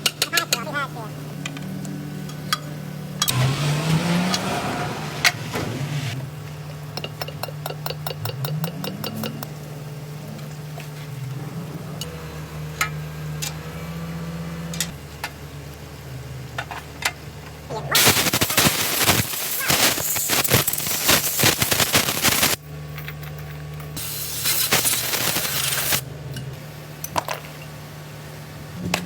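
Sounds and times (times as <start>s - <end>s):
diesel engine idling and revving: 0.0s - 19.8s.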